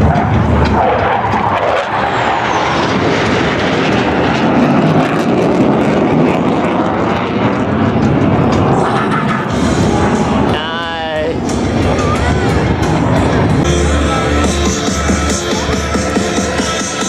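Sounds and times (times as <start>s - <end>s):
jet engines flying past: 0.0s - 17.0s.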